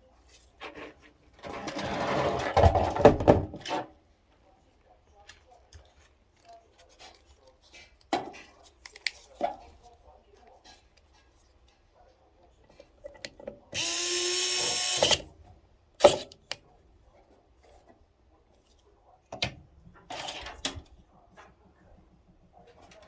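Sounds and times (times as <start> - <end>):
power drill spinning: 13.8 - 15.3.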